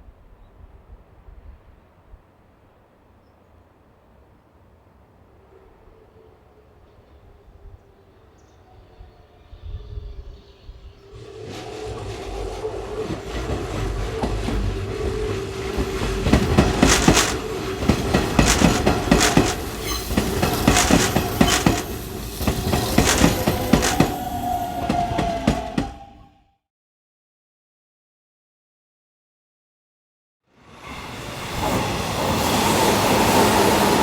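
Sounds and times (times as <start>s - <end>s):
train motor tone: 10.0s - 26.1s
train wheels clattering: 11.2s - 26.0s.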